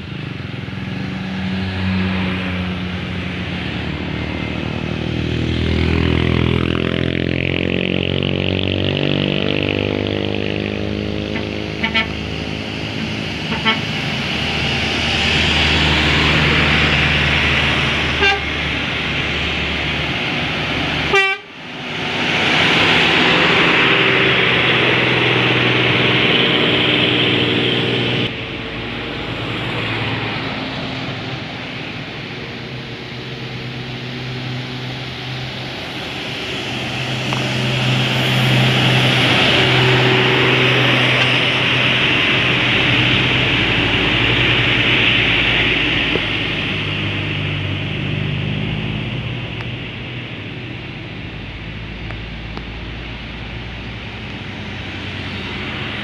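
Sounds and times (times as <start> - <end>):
bus engine running: 0.0 - 56.0
multi-tone bus air horn tune: 11.3 - 12.4, 13.4 - 14.1, 18.0 - 18.7, 21.0 - 21.6.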